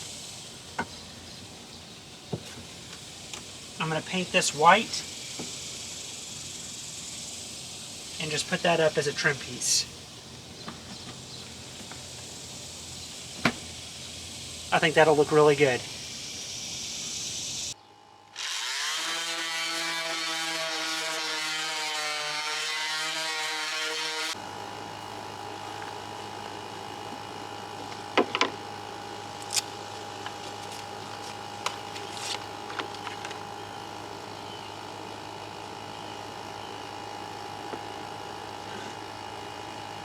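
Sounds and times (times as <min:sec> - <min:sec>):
power tool motor spinning: 0:18.3 - 0:24.4, 0:29.1 - 0:33.7
steady low hum: 0:24.3 - 0:40.0.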